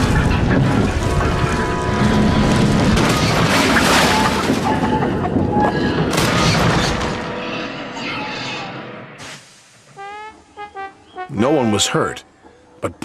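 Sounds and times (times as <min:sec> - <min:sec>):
train crash rumble with impacts: 0:00.0 - 0:07.2.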